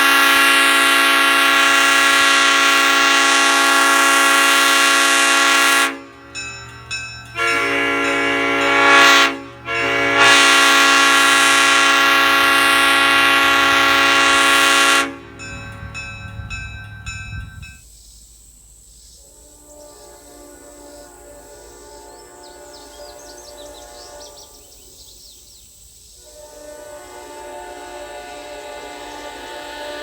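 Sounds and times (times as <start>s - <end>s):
horn echoes: 0.0s - 6.4s, 7.3s - 17.8s, 26.2s - 30.0s
train air horn chord blasts: 0.0s - 6.5s, 7.3s - 17.8s, 19.2s - 24.7s, 26.2s - 30.0s.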